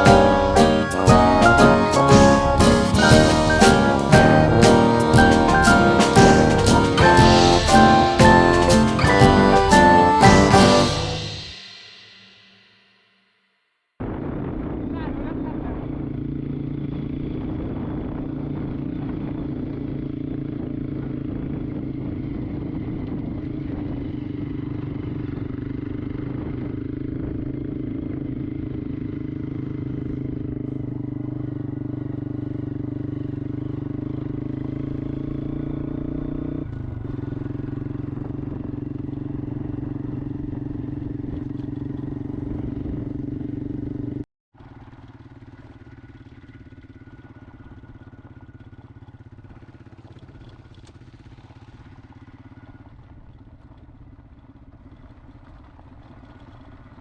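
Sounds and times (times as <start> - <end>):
motorcycle engine running: 15.5 - 57.0.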